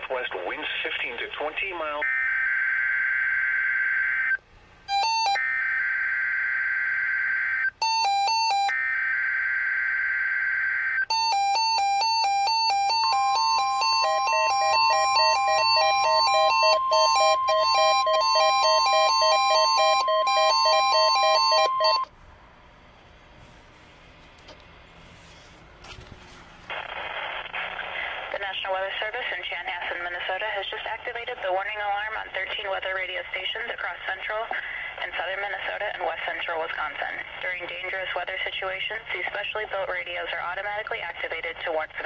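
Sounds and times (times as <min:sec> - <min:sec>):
steady warning alarm tone: 0:02.0 - 0:22.1
rapid two-tone alert beeping: 0:11.1 - 0:22.1.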